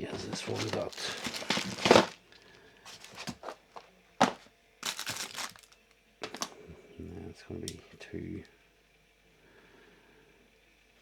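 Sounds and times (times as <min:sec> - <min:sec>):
crinkling: 0:00.0 - 0:06.6
rustling: 0:00.0 - 0:06.6.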